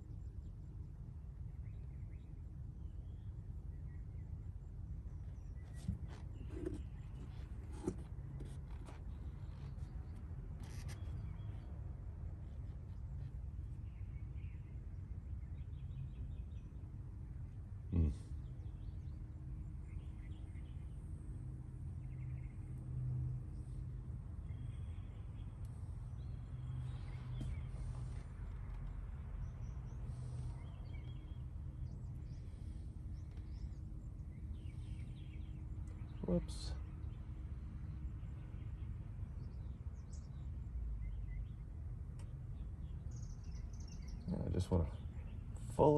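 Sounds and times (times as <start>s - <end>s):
low outdoor rumble: 0.0s - 45.9s
faint bird chirps: 12.5s - 21.3s, 24.4s - 45.9s.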